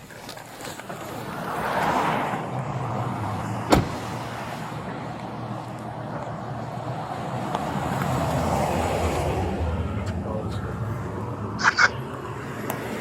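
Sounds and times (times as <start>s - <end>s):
road traffic noise: 0.0s - 13.0s
car passing by: 0.8s - 13.0s.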